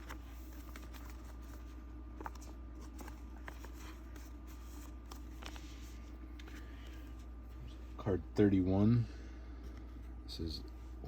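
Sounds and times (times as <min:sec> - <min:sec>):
cards and binder pages rustling: 0:00.0 - 0:07.6
steady low hum: 0:00.0 - 0:11.0.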